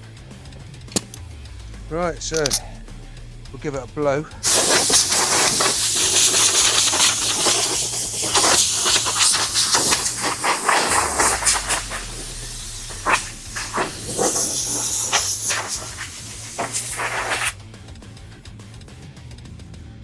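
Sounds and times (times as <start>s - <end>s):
compressed air blow gun hissing: 4.4s - 17.6s.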